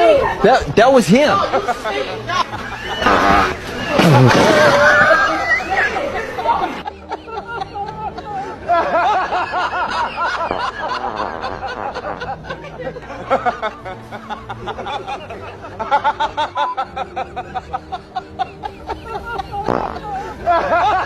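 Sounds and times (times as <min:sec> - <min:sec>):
person laughing and snickering: 0:03.0 - 0:05.3.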